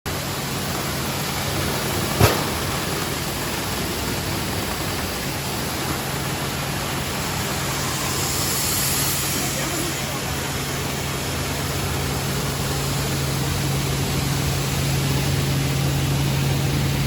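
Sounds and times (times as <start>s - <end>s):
milling machinery running: 0.1s - 17.0s
sharp knock: 2.2s - 3.0s.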